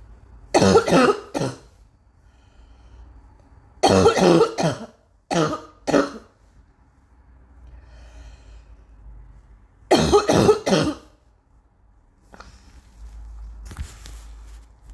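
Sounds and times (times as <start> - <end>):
person coughing harshly: 0.5 - 1.8, 3.8 - 6.4, 9.9 - 11.2.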